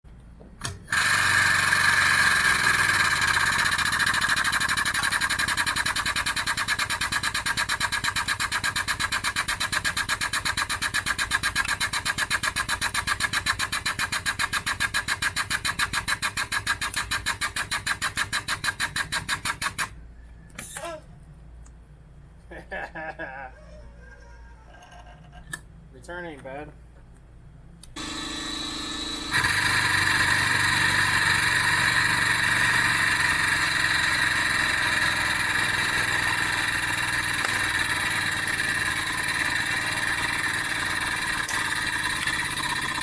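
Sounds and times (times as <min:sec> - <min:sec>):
air-powered machinery pulsing: 0:28.0 - 0:43.0.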